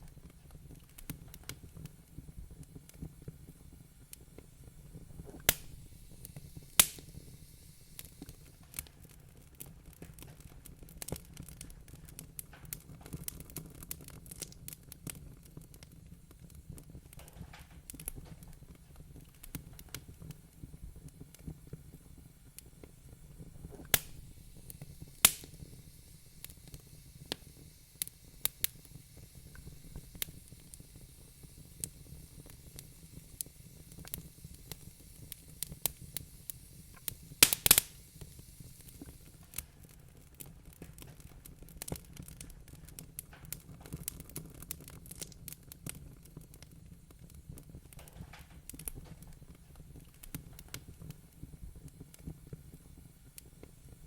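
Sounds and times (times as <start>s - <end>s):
wood fire crackling: 0.0s - 54.0s.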